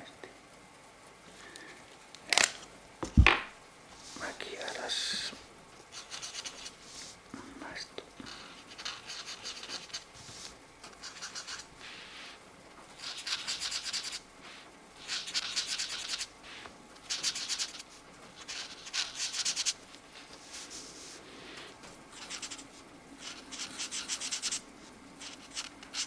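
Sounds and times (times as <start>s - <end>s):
marker scratching on paper: 5.9s - 7.1s, 8.3s - 12.4s, 13.0s - 26.0s.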